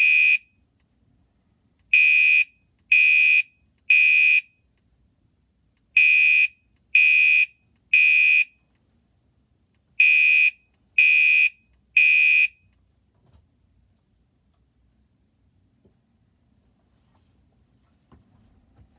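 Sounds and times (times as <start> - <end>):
fire alarm horn blasts: 0.0 - 0.4, 1.9 - 4.5, 6.0 - 8.6, 10.0 - 12.6.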